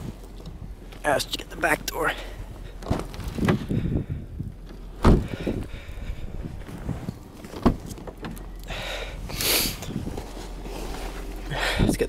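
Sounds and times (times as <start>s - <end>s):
car door thud: 4.9s - 5.6s, 7.5s - 8.4s
short scraping hiss: 9.3s - 9.8s.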